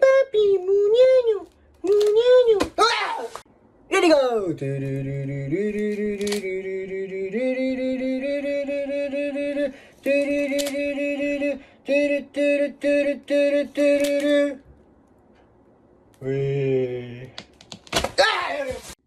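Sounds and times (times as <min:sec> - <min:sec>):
person singing wordless tune: 0:00.0 - 0:02.8, 0:04.2 - 0:14.6
sharp clicks: 0:05.8 - 0:06.5.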